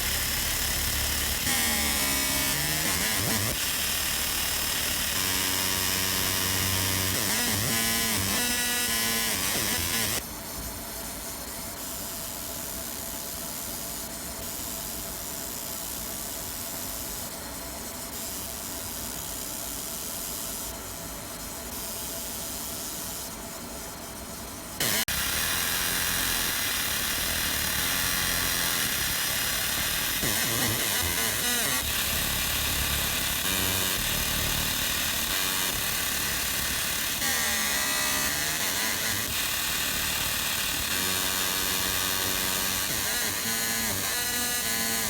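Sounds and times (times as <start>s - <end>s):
laser machine hiss: 0.0s - 10.2s, 24.8s - 45.0s
loud steady machine noise: 0.0s - 10.2s, 24.8s - 45.0s.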